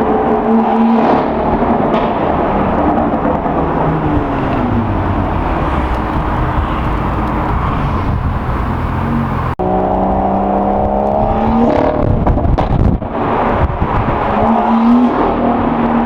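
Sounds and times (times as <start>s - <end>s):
loud rough car exhaust: 1.5s - 11.4s.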